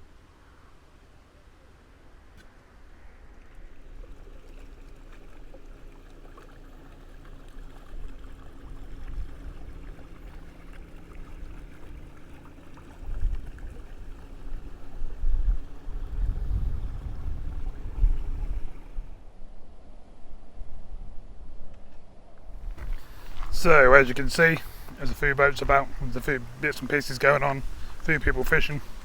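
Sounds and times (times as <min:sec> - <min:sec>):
water noise: 0:00.0 - 0:19.4, 0:22.4 - 0:29.0
motor boat engine: 0:02.2 - 0:19.3, 0:22.5 - 0:29.0
wind buffeting microphone: 0:12.9 - 0:19.3, 0:22.5 - 0:29.0.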